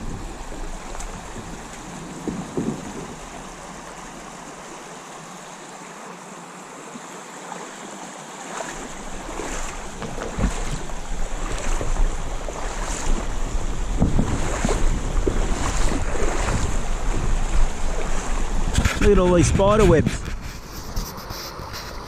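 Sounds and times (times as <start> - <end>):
scattered knocks: 0.0 - 3.5
shallow creek water hissing: 0.0 - 22.0.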